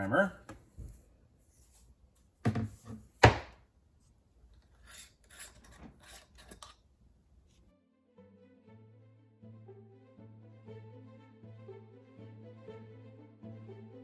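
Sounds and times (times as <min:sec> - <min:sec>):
brush rubbing strokes on pipe: 0:01.4 - 0:02.1
pipe fittings knocking on workbench: 0:02.4 - 0:03.6.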